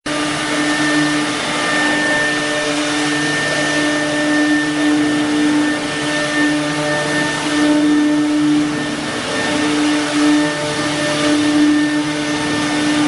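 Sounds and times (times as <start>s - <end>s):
machine mechanical whine: 0.1s - 13.0s
rushing noise: 0.1s - 13.0s.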